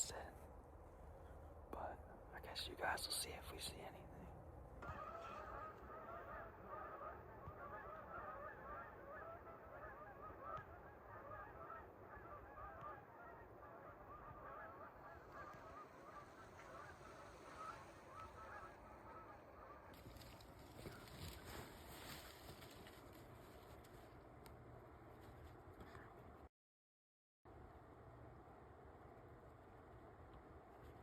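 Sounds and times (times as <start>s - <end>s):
geese honking: 4.8s - 23.0s.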